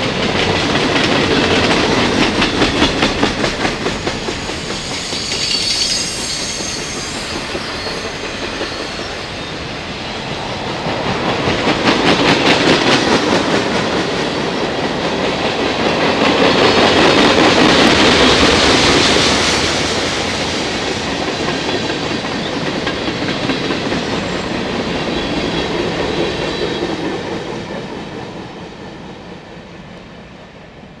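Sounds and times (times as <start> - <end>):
train wheels clattering over rail joints: 0.0 - 9.5.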